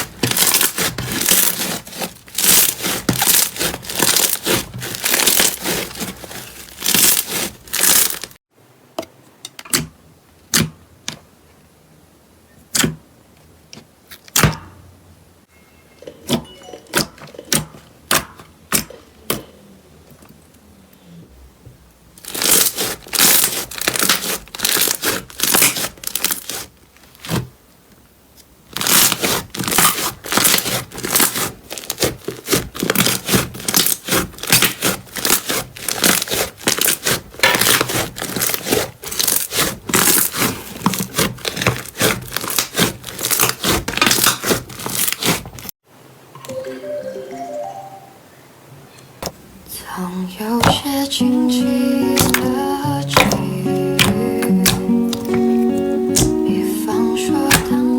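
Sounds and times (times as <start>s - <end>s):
slime crackling and popping: 0.0s - 8.4s, 22.2s - 27.4s, 28.8s - 45.4s.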